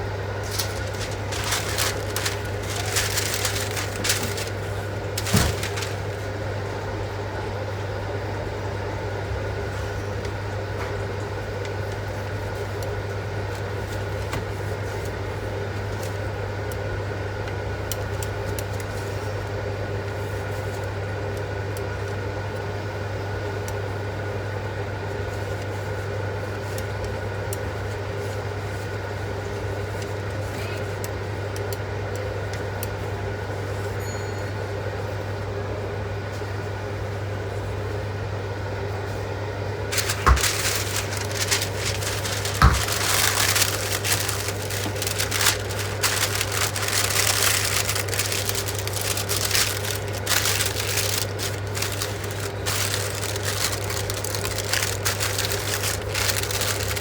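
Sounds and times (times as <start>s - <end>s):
kitchen appliance humming: 0.0s - 10.2s, 39.7s - 57.0s.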